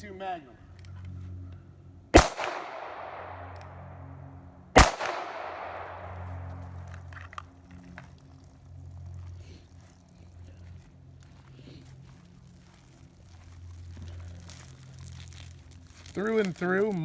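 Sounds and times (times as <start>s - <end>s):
handgun shots echoing: 2.2s - 3.9s, 4.8s - 6.8s.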